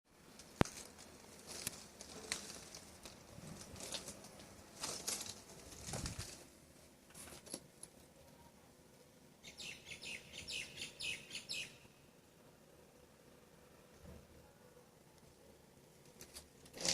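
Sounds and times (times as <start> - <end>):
rustling and scraping handling: 0.2 - 8.4, 16.0 - 16.9.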